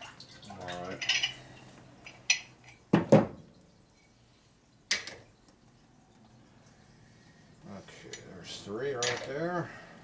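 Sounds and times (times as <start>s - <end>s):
metal tools clinking on workbench: 9.0s - 9.5s.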